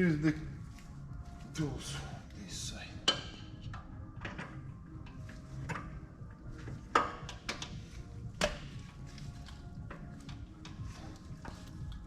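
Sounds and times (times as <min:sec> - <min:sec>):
background music: 0:00.0 - 0:12.0
sharp clicks and knocks: 0:06.6 - 0:10.8.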